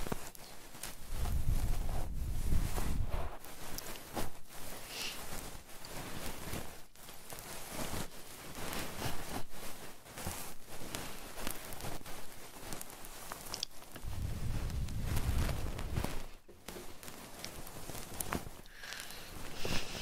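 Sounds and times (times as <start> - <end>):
rubbing on microphone: 0.0 - 20.0.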